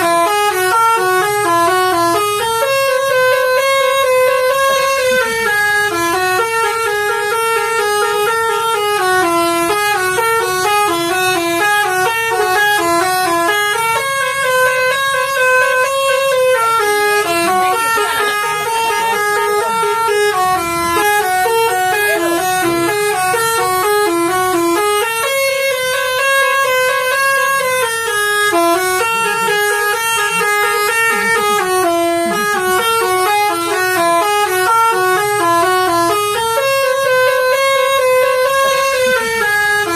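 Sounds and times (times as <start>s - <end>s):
bus air horn playing melody: 0.0s - 39.9s.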